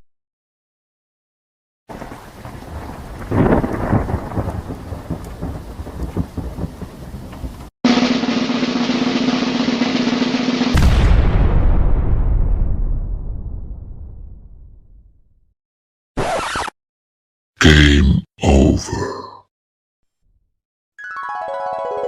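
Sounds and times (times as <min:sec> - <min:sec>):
loud low boom: 0:10.7 - 0:15.2.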